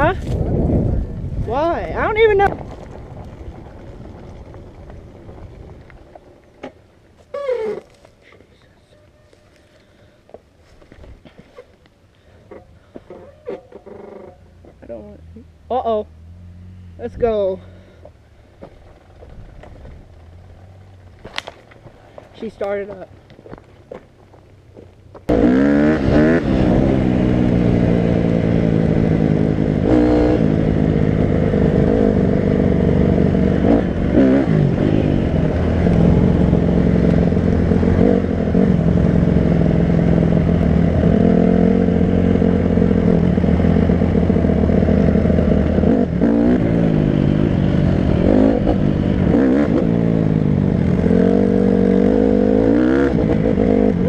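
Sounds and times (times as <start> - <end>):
quad engine revving: 25.3 - 54.0.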